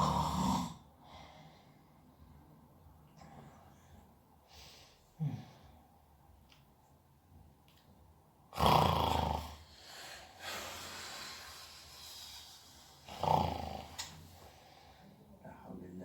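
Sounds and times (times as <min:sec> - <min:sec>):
man snoring: 0:00.0 - 0:00.8, 0:08.6 - 0:09.7, 0:13.0 - 0:14.0
snort: 0:00.0 - 0:00.9, 0:08.6 - 0:09.7, 0:13.0 - 0:14.1
noisy breaths: 0:00.0 - 0:06.1, 0:09.5 - 0:15.6.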